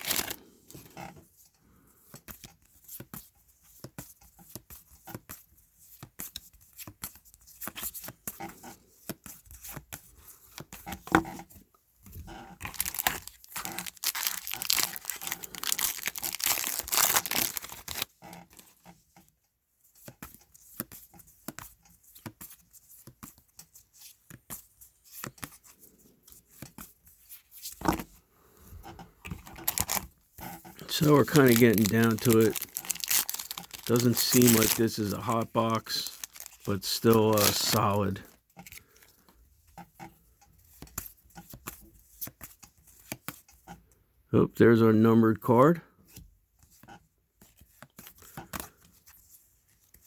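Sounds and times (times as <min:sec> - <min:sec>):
card packs tearing open: 0:00.0 - 0:00.4, 0:12.6 - 0:18.7, 0:29.4 - 0:30.1, 0:30.8 - 0:38.3
wrappers crinkling: 0:00.0 - 0:00.4, 0:12.6 - 0:18.7, 0:29.4 - 0:30.1, 0:30.8 - 0:38.4.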